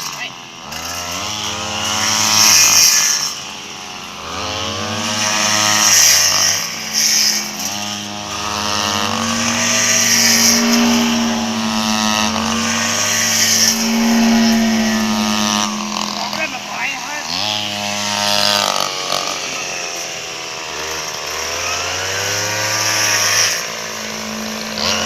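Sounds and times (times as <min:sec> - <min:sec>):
vehicle engine revving: 0:00.0 - 0:25.0
steady hum: 0:08.0 - 0:17.3.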